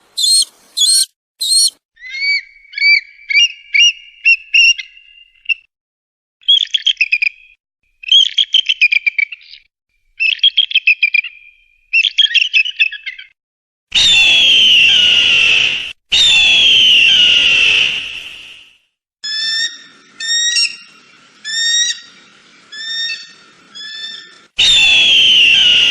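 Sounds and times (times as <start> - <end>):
eagle chirping and chattering: 0.1 - 5.0
eagle screams: 0.2 - 3.0, 14.0 - 18.1, 22.8 - 25.9.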